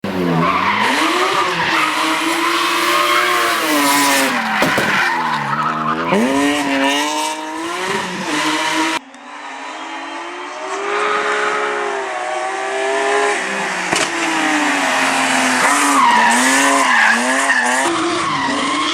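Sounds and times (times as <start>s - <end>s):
car engine revving hard: 0.0s - 18.6s
tyres squealing: 0.4s - 6.3s
sharp crack: 2.2s - 5.7s.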